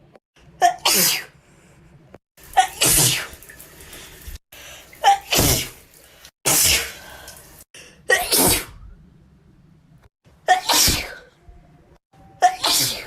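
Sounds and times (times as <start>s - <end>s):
person sneezing wetly: 0.6s - 1.3s, 2.6s - 3.4s, 5.0s - 5.8s, 6.4s - 7.3s, 8.1s - 8.8s, 10.5s - 11.3s, 12.4s - 13.0s.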